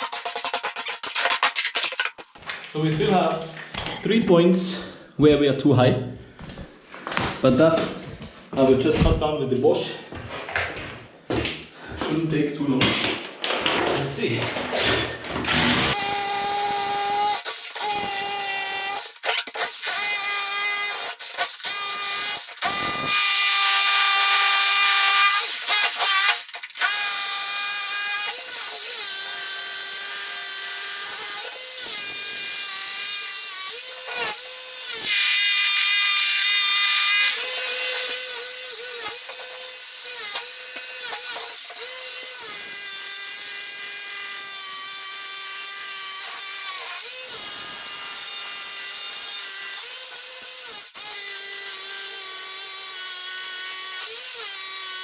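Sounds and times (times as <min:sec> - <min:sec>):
angle grinder cutting concrete: 0:00.0 - 0:02.4, 0:14.7 - 0:55.0.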